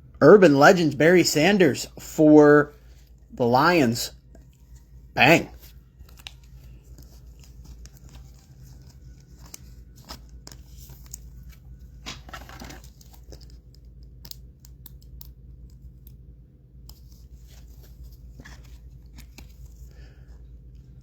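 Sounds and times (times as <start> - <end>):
steady low hum: 0.0 - 21.0
cards clicking and rustling: 5.3 - 20.2.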